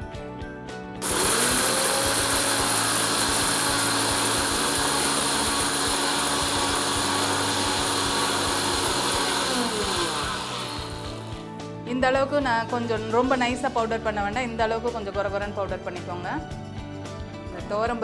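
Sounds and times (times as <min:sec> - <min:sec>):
mixer grinder grinding spices: 0:01.0 - 0:11.6.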